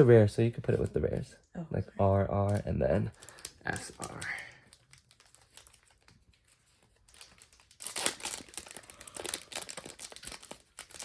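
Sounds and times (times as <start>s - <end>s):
foil wrapper crinkling: 2.5s - 11.0s.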